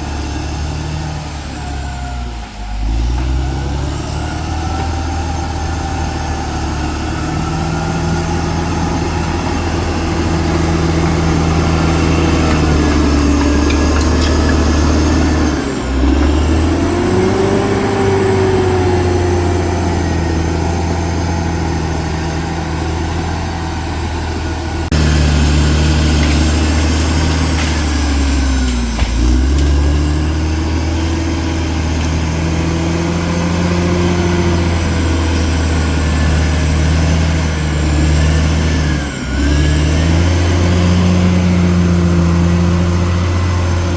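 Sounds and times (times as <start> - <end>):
bulldozer diesel engine droning: 0.0 - 43.9.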